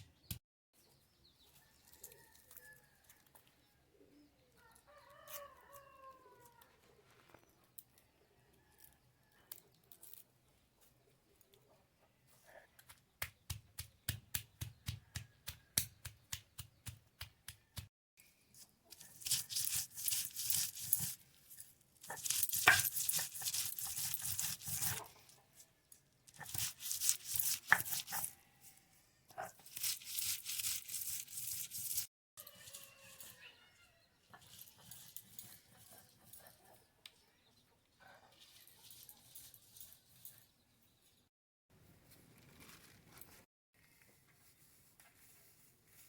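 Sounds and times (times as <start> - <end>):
knife chopping food: 13.2 - 17.9, 26.4 - 28.2
rough scraping or tearing: 19.0 - 25.7, 26.3 - 28.8, 29.4 - 33.5.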